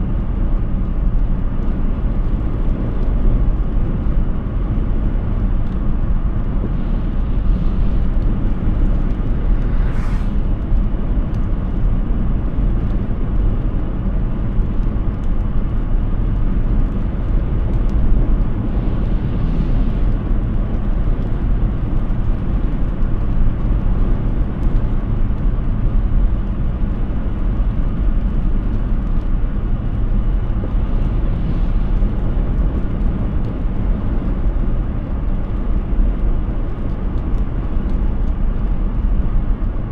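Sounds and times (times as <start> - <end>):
car road and wind noise: 0.0 - 39.9
brief hiss: 9.5 - 10.5.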